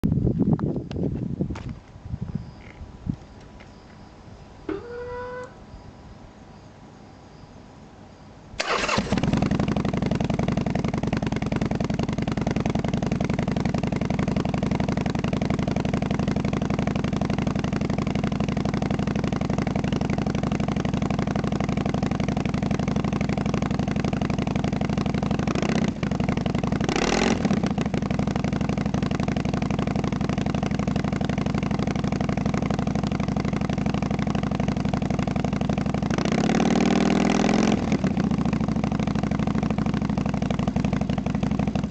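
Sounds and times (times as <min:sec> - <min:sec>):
motorcycle engine idling and revving: 0:00.0 - 0:06.0, 0:06.7 - 0:41.9.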